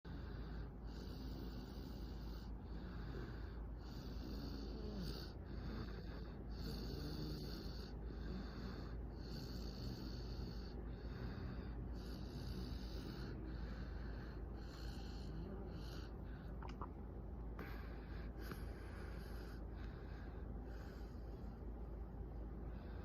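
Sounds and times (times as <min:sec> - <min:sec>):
snoring with hissing rasp: 0:00.1 - 0:16.3.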